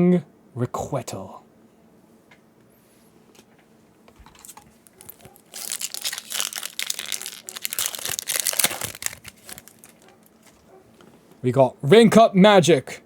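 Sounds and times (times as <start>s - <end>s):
foil wrapper crinkling and tearing: 4.4s - 10.7s.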